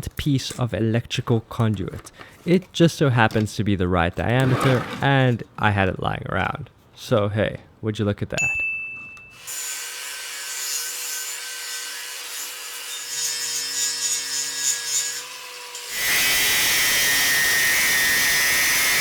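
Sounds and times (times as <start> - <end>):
sawing metal conduit: 9.4 - 19.0
power tool running: 15.8 - 19.0.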